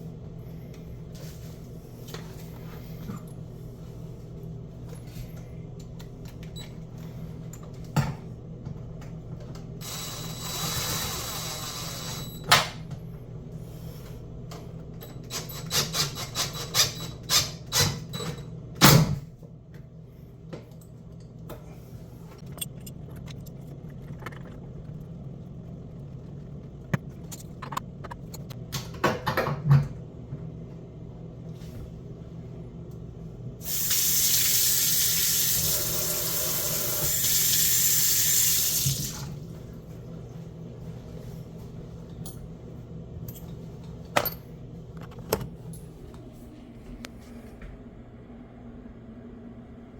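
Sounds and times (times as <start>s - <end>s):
steady low hum: 0.0s - 15.3s, 18.2s - 34.0s
water running into sink: 33.6s - 39.4s.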